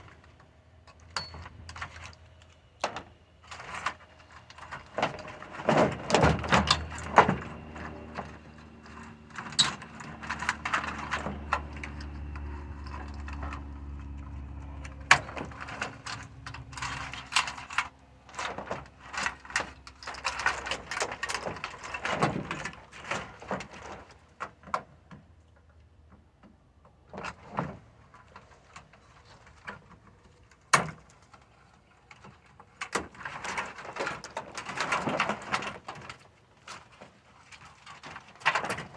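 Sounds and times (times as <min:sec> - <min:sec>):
small metal parts clattering: 0:00.9 - 0:24.2.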